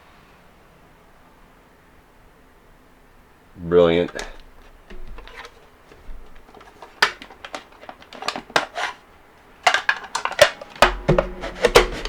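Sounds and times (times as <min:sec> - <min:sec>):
plastic parts clicking and rattling: 0:04.0 - 0:12.0.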